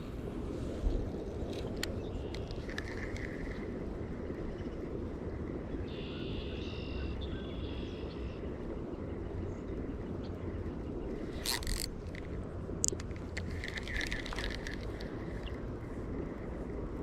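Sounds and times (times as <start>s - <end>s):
low outdoor rumble: 0.0s - 17.0s.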